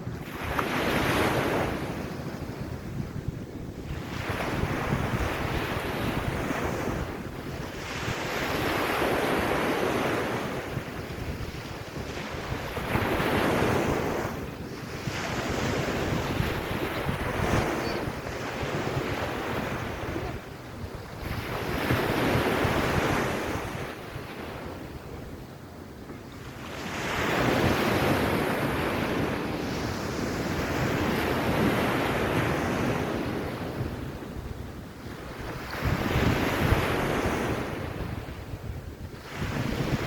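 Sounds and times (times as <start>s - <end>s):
wind rumbling on microphone: 0.0s - 40.0s
sea waves washing onto beach: 3.8s - 25.2s.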